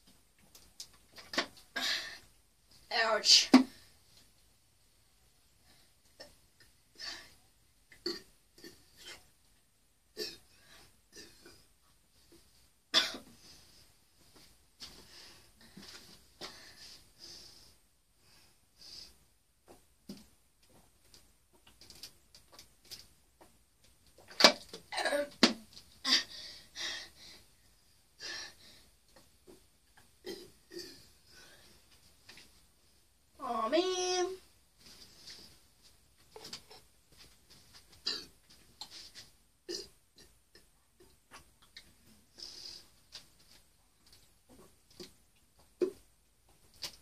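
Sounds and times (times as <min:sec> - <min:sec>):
person coughing: 0:13.0 - 0:13.3.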